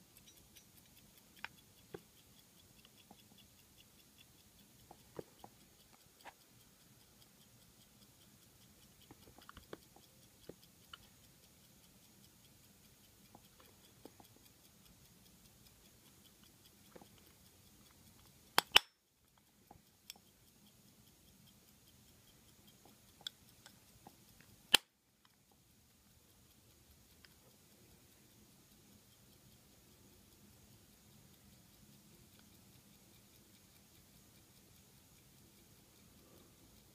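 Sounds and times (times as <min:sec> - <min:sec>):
pocket watch clicks and taps: 0:00.0 - 0:36.9
sharp mechanical click: 0:18.2 - 0:19.0, 0:24.6 - 0:24.9.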